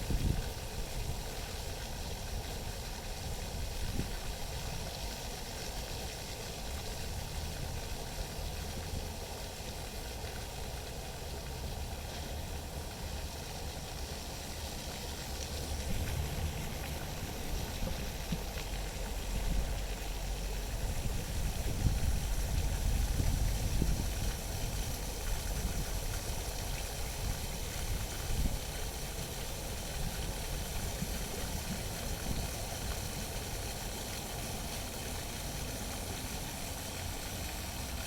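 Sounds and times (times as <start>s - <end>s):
wind buffeting microphone: 20.5s - 28.8s.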